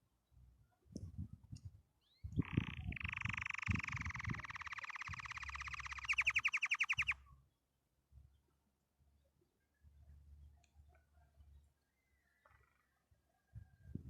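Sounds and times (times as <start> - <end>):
canary trilling: 2.4 - 7.2.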